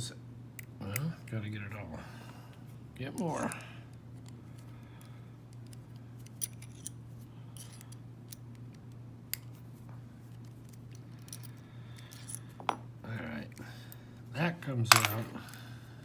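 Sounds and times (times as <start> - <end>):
steady low hum: 0.0 - 16.0
metallic clicks and scrapes of wrench: 5.5 - 7.0, 7.6 - 9.6.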